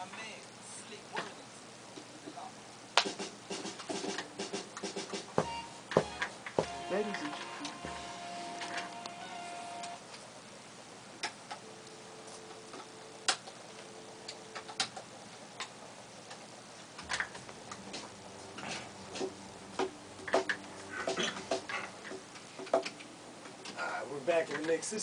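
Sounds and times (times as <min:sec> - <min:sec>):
faint hiss: 0:06.8 - 0:25.0.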